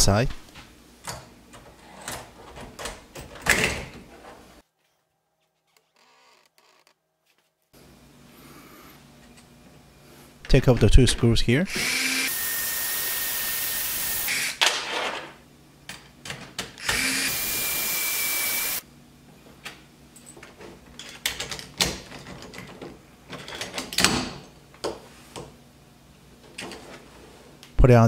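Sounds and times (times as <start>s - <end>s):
cordless drill whirring: 11.7s - 14.6s, 16.8s - 18.8s
lock parts clicking and knocking: 20.4s - 24.9s.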